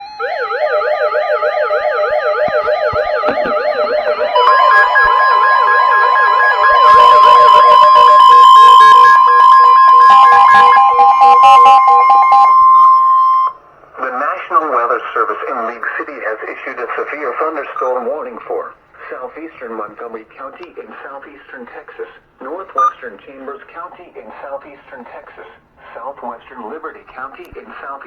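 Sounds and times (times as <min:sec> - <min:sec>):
beeping tones: 0:00.0 - 0:13.6, 0:22.8 - 0:23.0
fast warbling siren: 0:00.0 - 0:13.6
steady warning tone: 0:00.0 - 0:13.7, 0:22.8 - 0:23.0.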